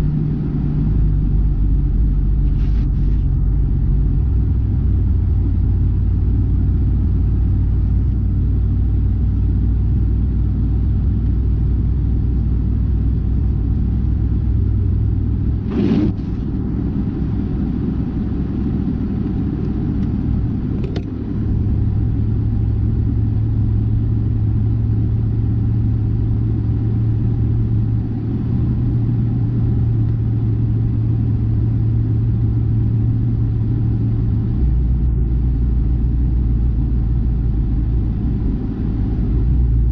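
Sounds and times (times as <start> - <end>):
car engine rumble: 0.0 - 39.9
road noise: 0.0 - 39.9
sharp click: 20.8 - 21.1.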